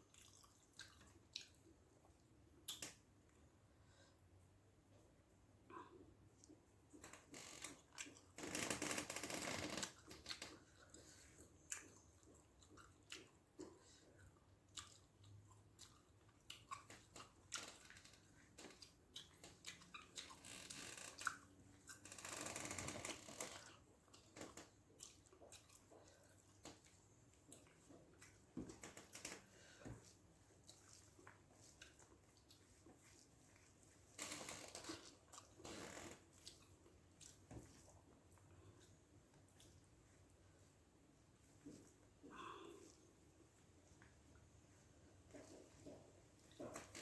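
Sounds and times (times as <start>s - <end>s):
man chewing and smacking: 0.0s - 3.4s, 5.7s - 8.4s, 9.9s - 40.8s.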